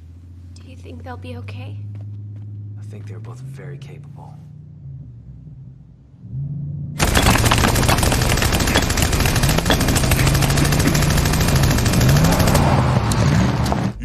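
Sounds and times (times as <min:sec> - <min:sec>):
low hum: 0:00.0 - 0:14.0
rapid machine-gun fire: 0:07.0 - 0:13.6.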